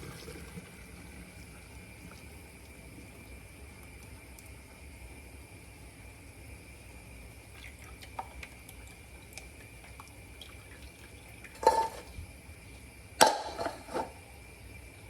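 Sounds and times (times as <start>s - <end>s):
water drips: 7.5s - 11.7s
cookware clinks: 11.6s - 12.1s, 13.2s - 14.1s.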